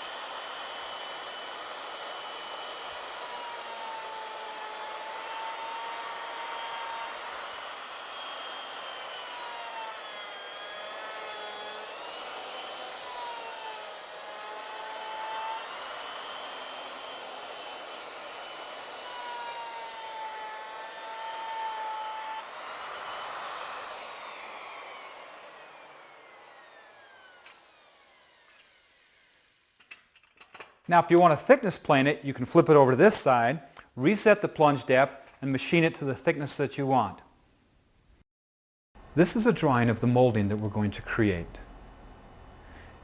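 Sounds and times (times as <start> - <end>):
router cutting wood: 0.0 - 29.9, 39.0 - 42.0
router spinning down: 0.0 - 29.9, 39.2 - 42.4.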